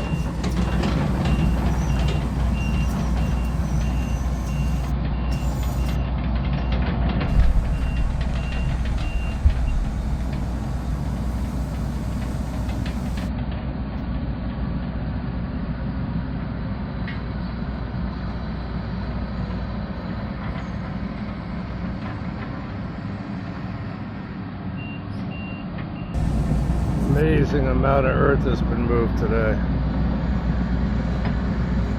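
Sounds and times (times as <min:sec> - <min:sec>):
beeping alarm: 0:00.0 - 0:06.1, 0:07.3 - 0:13.3, 0:26.2 - 0:27.2
excavator diesel engine running: 0:00.0 - 0:13.3, 0:26.2 - 0:27.8.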